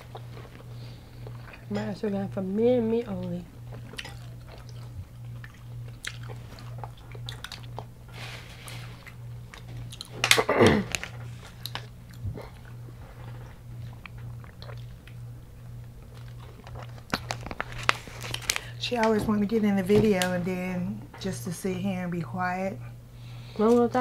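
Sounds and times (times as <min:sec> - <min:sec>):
chewing crunchy food: 0:00.0 - 0:01.9, 0:03.1 - 0:18.8.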